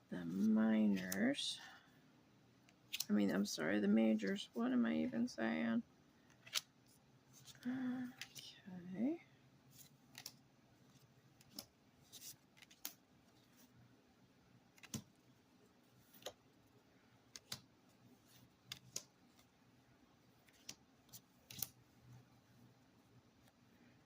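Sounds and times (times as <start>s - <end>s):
cards clicking and tapping: 11.4s - 13.0s, 14.7s - 15.2s, 17.3s - 17.7s, 18.6s - 19.5s, 20.4s - 21.8s.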